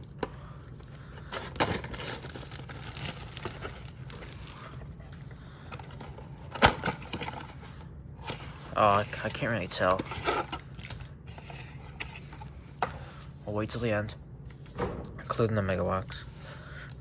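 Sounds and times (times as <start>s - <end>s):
wrapper crinkling and tearing: 1.5s - 4.8s.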